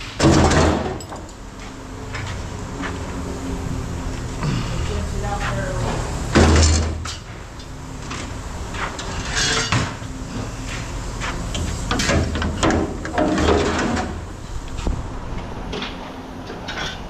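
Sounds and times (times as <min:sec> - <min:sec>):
scrap metal clanking: 0:04.9 - 0:07.4, 0:08.0 - 0:14.3.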